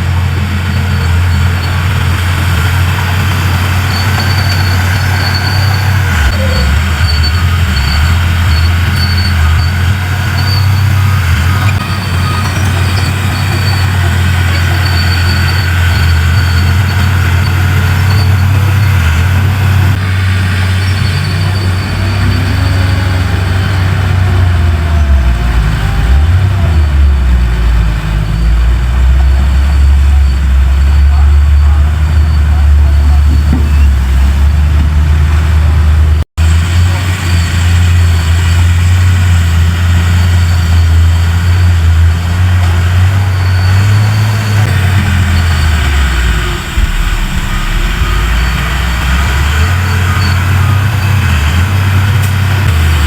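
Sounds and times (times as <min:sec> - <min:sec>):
diesel machinery engine rumble: 0:00.0 - 0:53.0
faint high squeak: 0:00.7 - 0:19.5.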